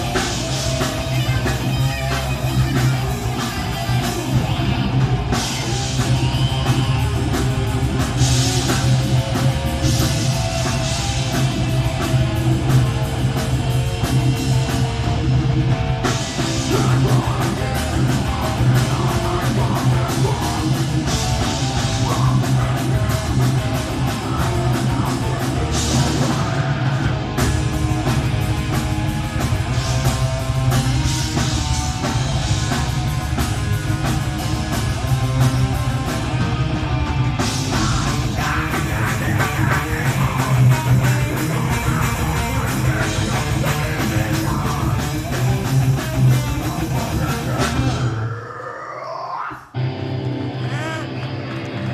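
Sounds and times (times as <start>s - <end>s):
vocals: 0.0s - 7.3s, 16.0s - 27.2s, 37.4s - 49.8s, 50.6s - 51.2s
drum kit: 0.0s - 48.9s, 49.8s - 51.9s
distorted guitars: 0.0s - 51.9s.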